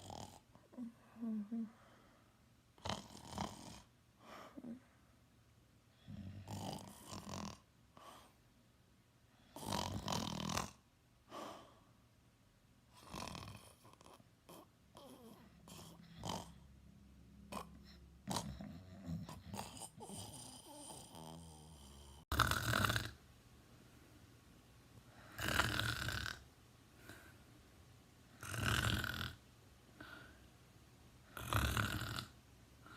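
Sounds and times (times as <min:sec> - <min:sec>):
person snoring loudly: 0:02.8 - 0:03.9, 0:06.1 - 0:07.6, 0:09.6 - 0:10.8, 0:13.0 - 0:16.6, 0:17.5 - 0:23.2, 0:25.2 - 0:26.4, 0:28.4 - 0:29.4, 0:31.3 - 0:32.4.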